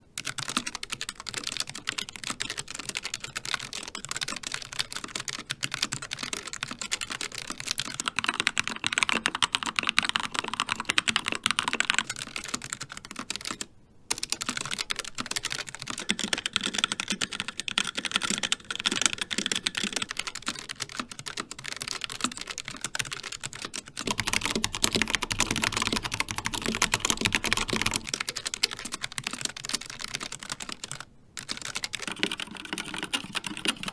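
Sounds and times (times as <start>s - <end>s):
mechanical keyboard typing: 0.2s - 33.9s.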